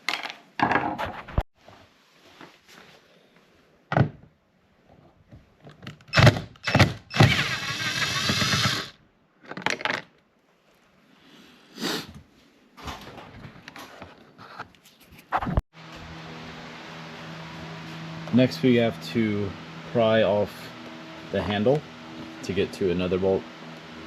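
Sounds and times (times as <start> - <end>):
cordless power driver whirring: 6.1 - 9.0.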